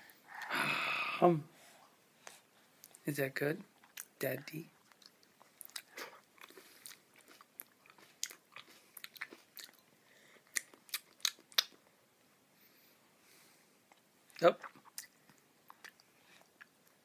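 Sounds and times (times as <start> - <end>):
chewing grapes: 3.8 - 11.9, 13.9 - 17.0.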